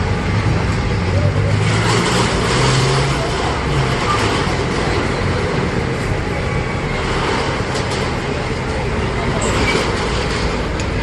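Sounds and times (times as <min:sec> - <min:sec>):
road traffic noise: 0:00.0 - 0:11.0
vehicle engine hum: 0:00.0 - 0:11.0.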